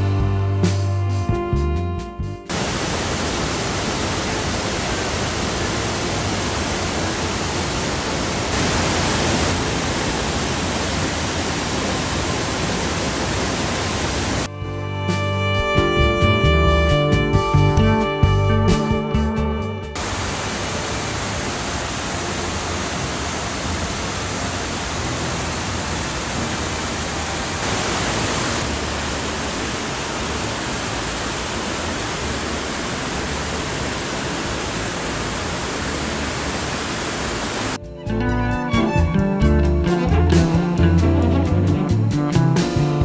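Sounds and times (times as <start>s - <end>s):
waterfall roaring: 2.5s - 14.5s, 20.0s - 37.8s.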